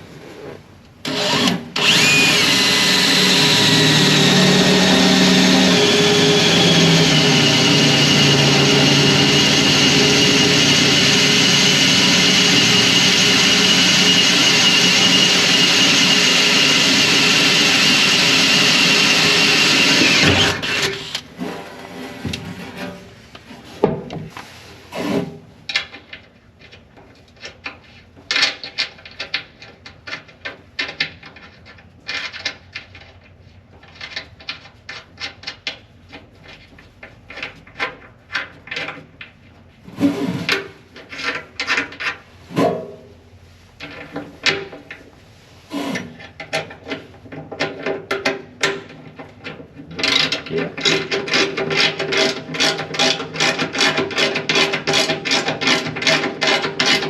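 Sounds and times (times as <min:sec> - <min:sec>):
hand tool rasping and clicking: 0:50.0 - 0:57.0.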